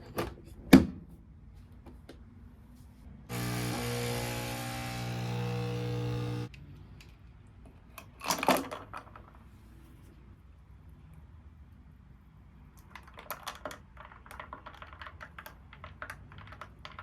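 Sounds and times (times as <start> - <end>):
small electric motor humming: 3.3 - 6.5.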